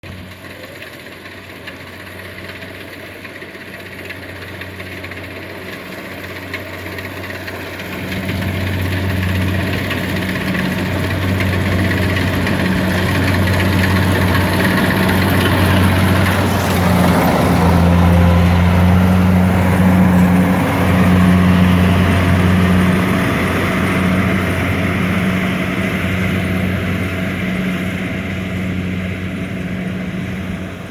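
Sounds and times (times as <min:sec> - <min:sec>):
combine harvester engine hum: 0:00.0 - 0:30.9
mechanical rush: 0:07.9 - 0:30.9.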